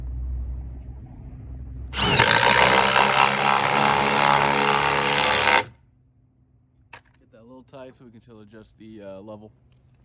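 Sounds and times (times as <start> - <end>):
low hum: 2.0 - 5.7
power drill running: 2.0 - 5.7.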